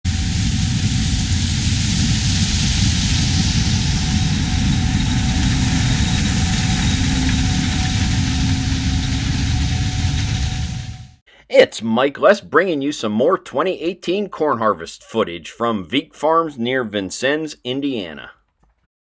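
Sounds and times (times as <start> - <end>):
combine harvester rumble: 0.1 - 11.2
faint steady whine: 0.1 - 11.2.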